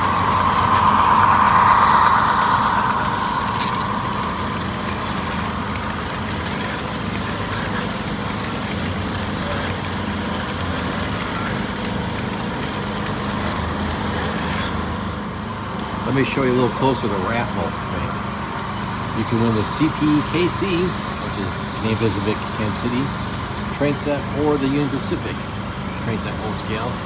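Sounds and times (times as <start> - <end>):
rushing noise: 0.0 - 7.8
engine hum: 0.0 - 27.0.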